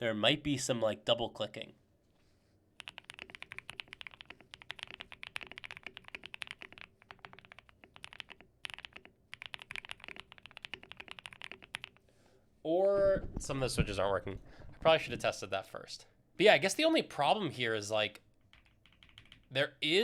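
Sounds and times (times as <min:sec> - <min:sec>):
fast typing on mechanical keyboard: 0:02.8 - 0:12.0, 0:18.5 - 0:19.5.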